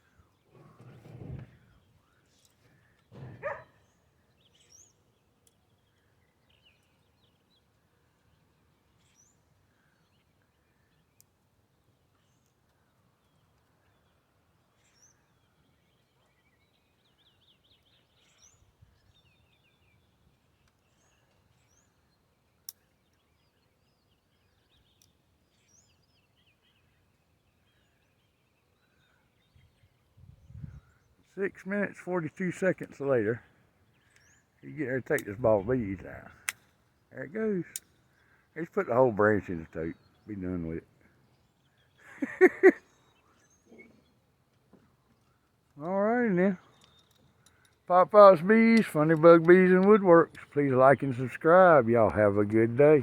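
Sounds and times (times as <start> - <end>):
songbird chirps and trills: 0.0 - 53.0
dull thumps: 0.5 - 1.8.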